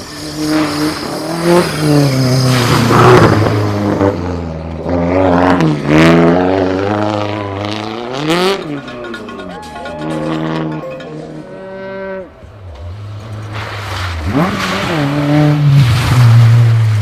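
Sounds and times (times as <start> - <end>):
rally car engine revving: 0.0 - 17.0.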